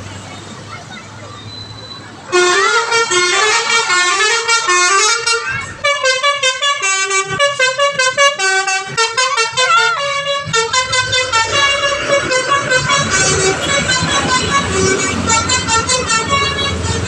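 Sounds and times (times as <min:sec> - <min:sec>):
multi-tone bus horn tune: 0:02.2 - 0:17.0.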